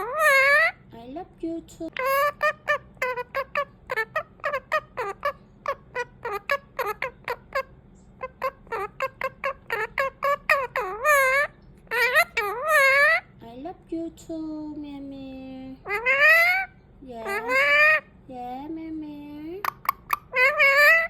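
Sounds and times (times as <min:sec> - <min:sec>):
parakeet squawking: 0:00.0 - 0:00.9, 0:01.9 - 0:13.4, 0:15.8 - 0:18.2, 0:19.6 - 0:21.0.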